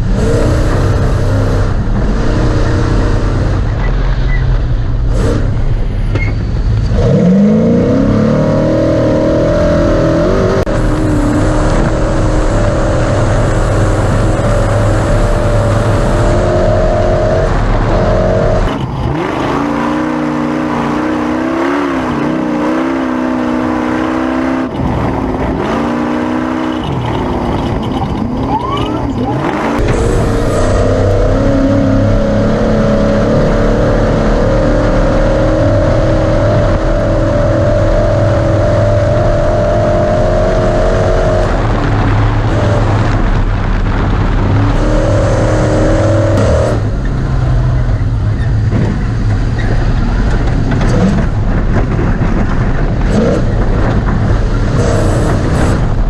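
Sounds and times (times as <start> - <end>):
heavy low rumble: 0.0 - 56.0
truck engine running hard: 0.0 - 56.0
truck knocking over rough dirt: 41.5 - 56.0.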